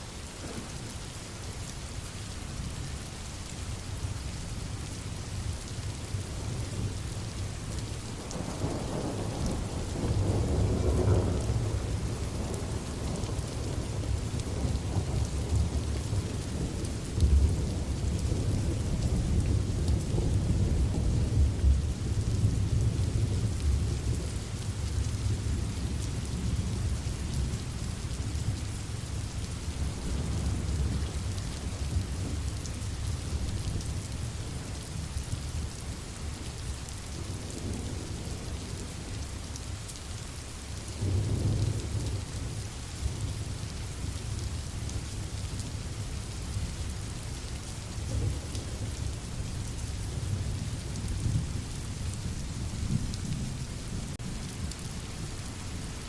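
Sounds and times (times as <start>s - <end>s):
steady rain: 0.0s - 56.0s.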